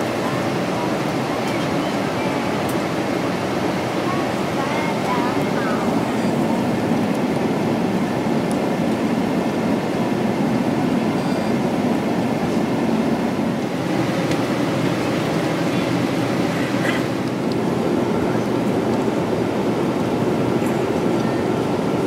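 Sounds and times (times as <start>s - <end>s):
jet airliner cabin noise: 0.0s - 22.0s.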